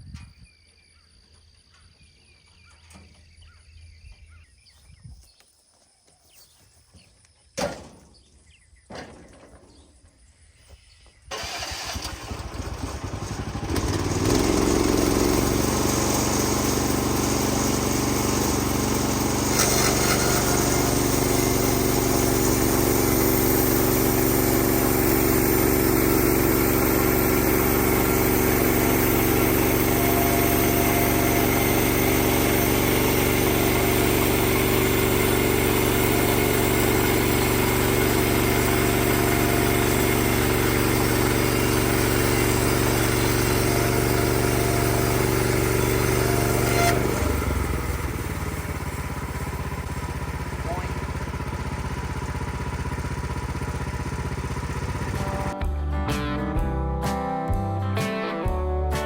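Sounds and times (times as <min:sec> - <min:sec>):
sawmill engine starting and running: 0:11.3 - 0:55.7.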